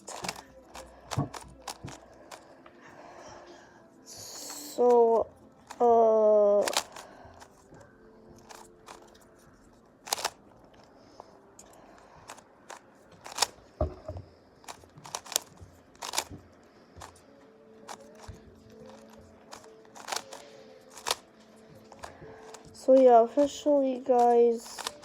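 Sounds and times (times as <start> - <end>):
puzzle cube clicking: 0.0 - 2.4, 4.4 - 7.7, 8.4 - 9.2, 10.0 - 10.4, 12.2 - 13.6, 14.6 - 16.4, 17.0 - 17.2, 17.9 - 25.0.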